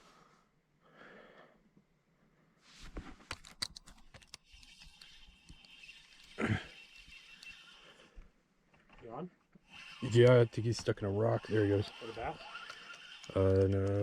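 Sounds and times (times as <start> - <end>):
faint clicking and rustling: 2.8 - 14.0.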